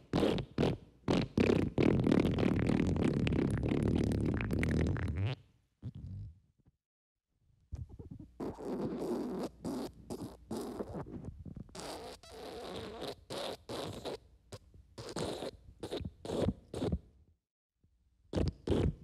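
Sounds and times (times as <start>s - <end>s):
sputtering farts: 0.2s - 6.3s, 8.0s - 14.2s.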